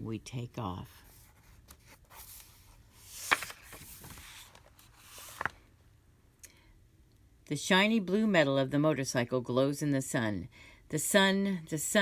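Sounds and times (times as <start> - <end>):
book pages rustling: 0.9 - 5.7.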